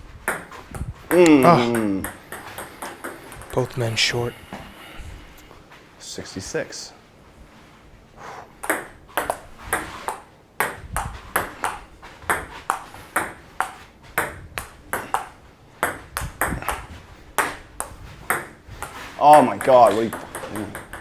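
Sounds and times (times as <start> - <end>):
table tennis ball clicking: 0.3 - 3.7, 8.6 - 21.0.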